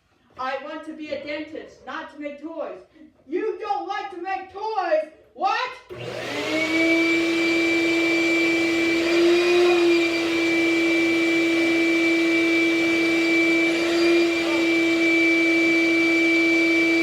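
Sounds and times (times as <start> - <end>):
shop vac motor humming and whining: 5.9 - 17.0.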